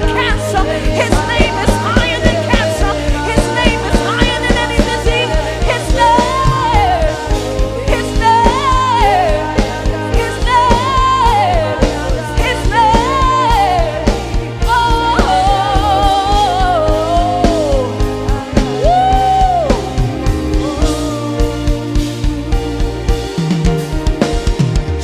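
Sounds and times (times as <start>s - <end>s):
person singing: 0.0s - 24.1s
gospel band playing: 0.0s - 25.0s.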